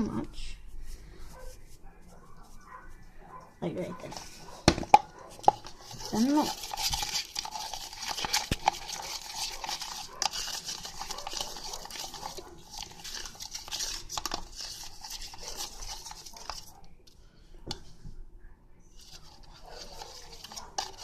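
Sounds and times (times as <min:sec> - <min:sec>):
slime being stirred: 0:03.8 - 0:18.0, 0:18.9 - 0:21.0.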